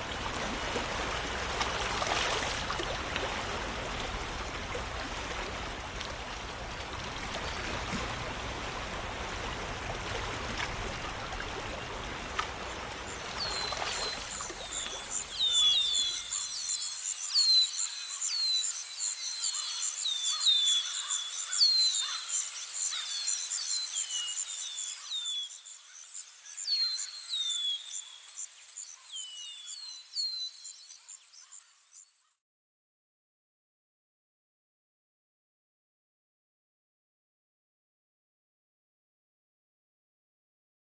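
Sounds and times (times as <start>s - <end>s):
flowing water: 0.0s - 16.5s
birds chirping: 7.4s - 16.8s.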